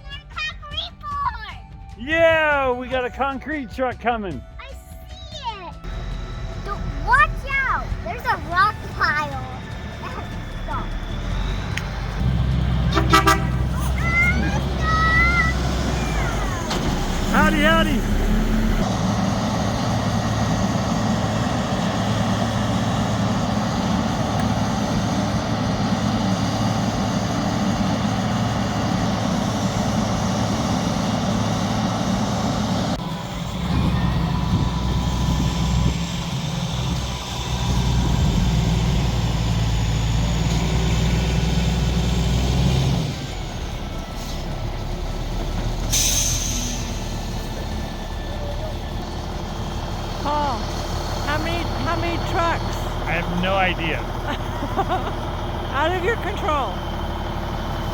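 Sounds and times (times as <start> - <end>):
diesel engine running: 0.0 - 57.9
air brake hiss: 45.9 - 47.2.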